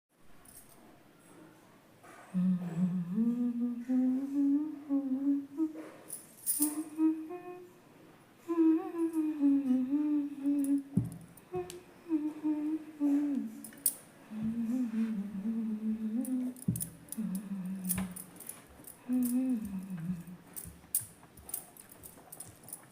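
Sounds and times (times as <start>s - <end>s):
woman humming: 2.3s - 7.8s, 8.4s - 22.9s.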